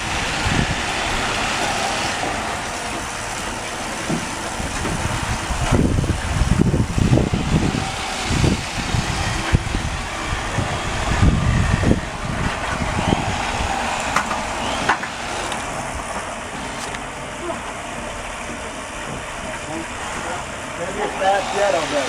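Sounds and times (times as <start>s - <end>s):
motor running: 0.0s - 22.0s
steady rushing noise: 0.0s - 22.0s
heavy low buffeting thumps: 3.2s - 20.7s.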